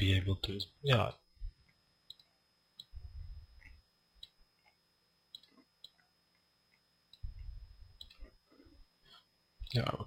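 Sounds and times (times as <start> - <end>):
computer mouse clicks: 2.1 - 3.0, 5.3 - 6.0, 8.0 - 8.3.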